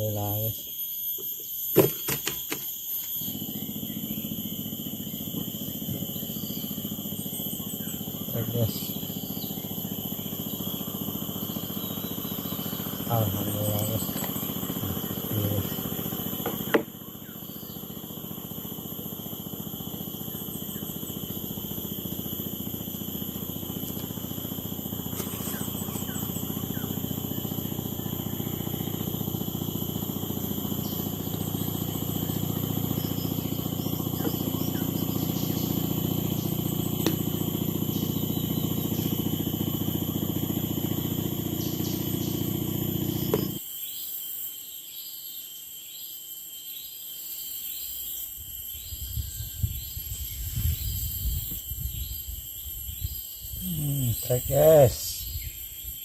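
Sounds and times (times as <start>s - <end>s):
forest insects droning: 0.0s - 56.0s
low motor hum: 1.8s - 43.6s.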